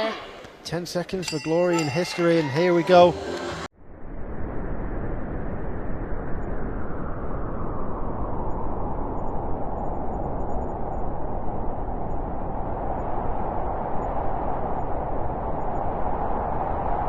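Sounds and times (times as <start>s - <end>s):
crowd cheering: 1.3s - 3.7s.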